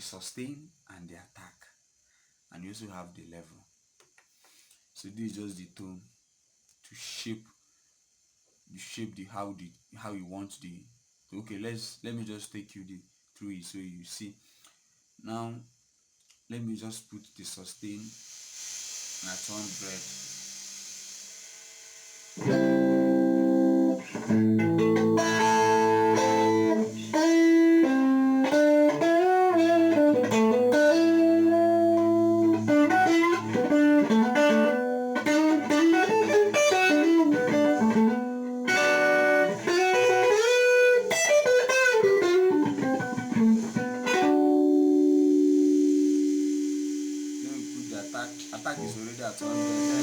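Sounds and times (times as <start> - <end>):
electric guitar with string bends: 22.4 - 50.0.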